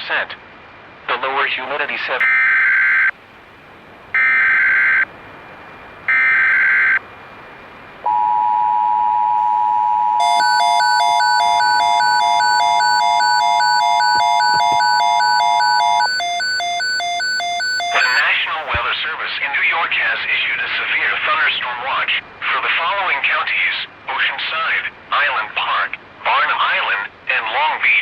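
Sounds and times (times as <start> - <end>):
pulsing alarm beep: 8.1 - 18.5
steady two-tone attention signal: 8.1 - 18.8
warbling digital data tones: 9.4 - 18.5.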